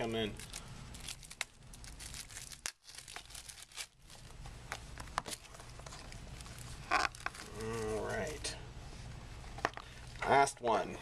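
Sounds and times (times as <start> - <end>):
wrapper rustling: 0.0 - 8.5
steady low hum: 0.0 - 11.0.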